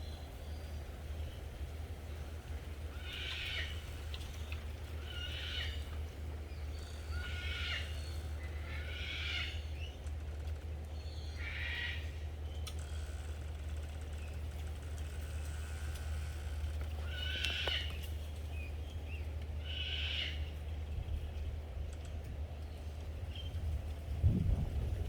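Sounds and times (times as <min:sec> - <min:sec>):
steady low hum: 0:00.0 - 0:25.0
animal calling: 0:02.9 - 0:09.8, 0:15.4 - 0:18.1.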